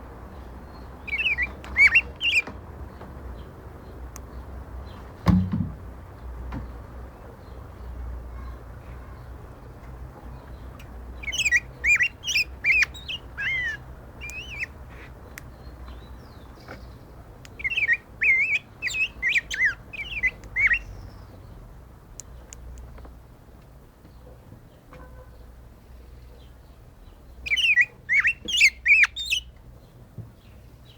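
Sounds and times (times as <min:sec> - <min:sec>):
bird warbling song: 0:00.2 - 0:03.5, 0:10.3 - 0:21.7, 0:26.0 - 0:30.9
dull thump: 0:05.2 - 0:05.8.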